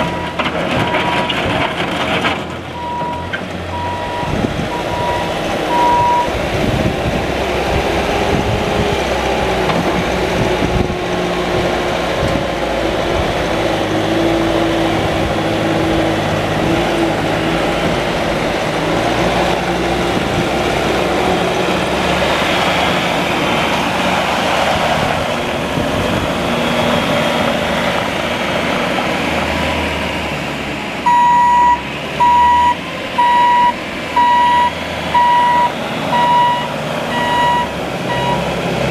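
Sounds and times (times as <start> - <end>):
diesel engine running: 0.0 - 38.9
backup alarm beeping: 2.8 - 6.3, 31.1 - 38.5.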